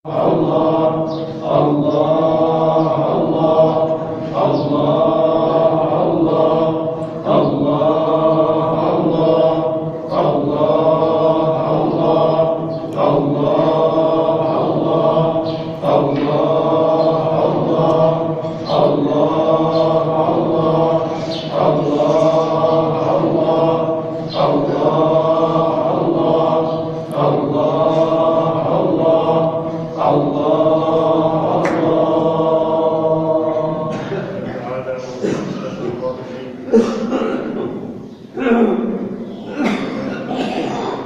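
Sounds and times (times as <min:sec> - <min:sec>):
voices chanting: 0:00.0 - 0:41.0.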